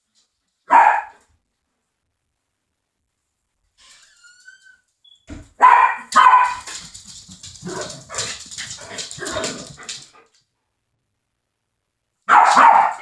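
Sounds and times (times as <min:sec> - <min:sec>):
dogs barking: 0:00.7 - 0:01.2, 0:05.6 - 0:10.2, 0:12.3 - 0:13.0.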